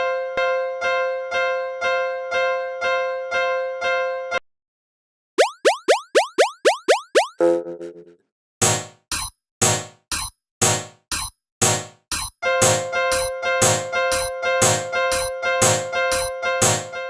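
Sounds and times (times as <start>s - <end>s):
held synth tone: 5.4s - 8.2s
electronic keyboard notes: 11.6s - 17.0s.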